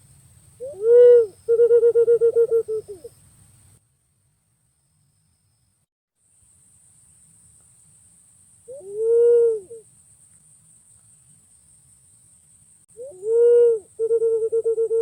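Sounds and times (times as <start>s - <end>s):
faint hiss: 0.0s - 14.7s
pigeon cooing: 0.6s - 3.1s, 8.7s - 9.8s, 13.0s - 15.0s.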